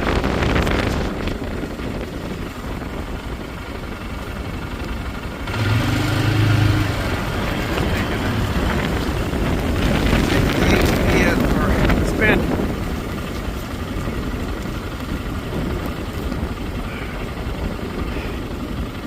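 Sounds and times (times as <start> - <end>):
low hum: 0.0 - 19.0
wind buffeting microphone: 0.0 - 19.0.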